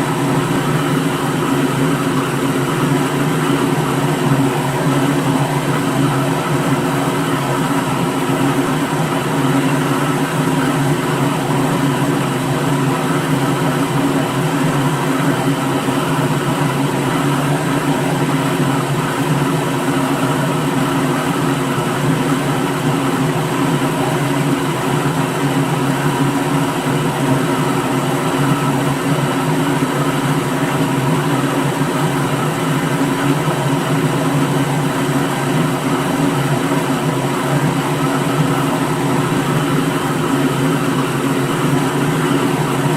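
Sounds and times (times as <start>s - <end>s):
electric blender running: 0.0s - 42.9s.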